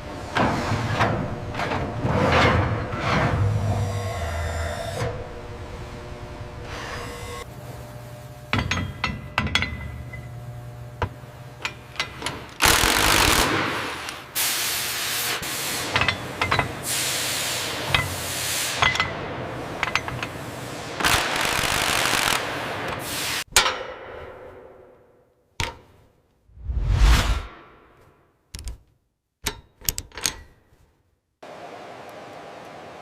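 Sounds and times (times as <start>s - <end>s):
low hum: 26.5s - 27.9s.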